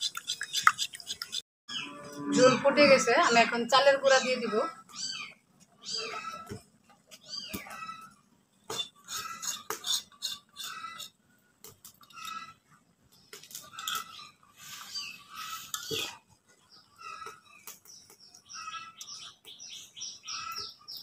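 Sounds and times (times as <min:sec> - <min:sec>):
metal spatula scraping a pan: 0:08.7 - 0:11.2.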